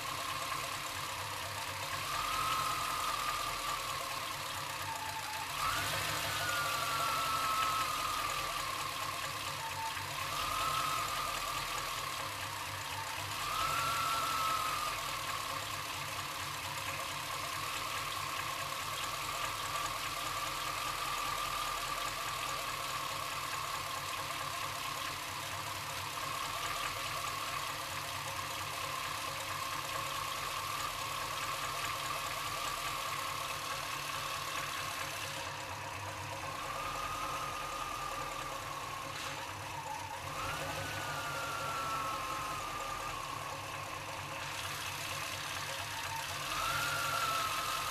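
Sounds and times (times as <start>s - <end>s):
engine idling roughly: 0.0s - 47.9s
high whine: 1.8s - 15.8s, 30.4s - 47.9s.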